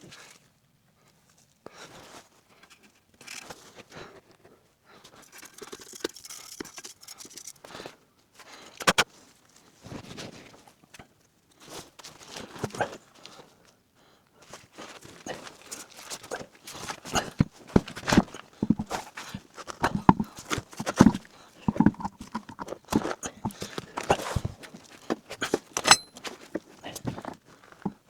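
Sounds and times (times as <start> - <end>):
handling scraping and clinking: 5.2 - 7.7, 16.8 - 28.0.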